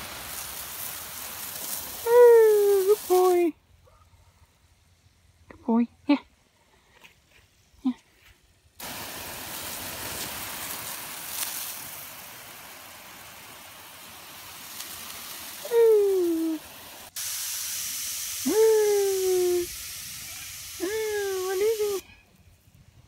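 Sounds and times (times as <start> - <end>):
spraying water hiss: 0.0 - 3.6, 8.8 - 22.4.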